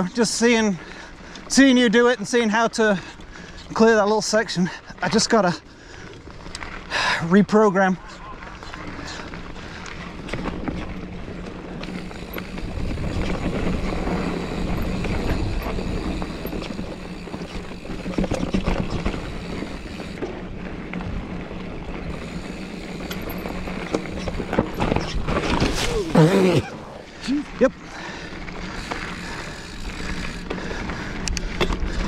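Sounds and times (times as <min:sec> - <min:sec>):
bike clicks and rattles: 0:00.0 - 0:32.0
tyre and wind rush: 0:11.9 - 0:27.4.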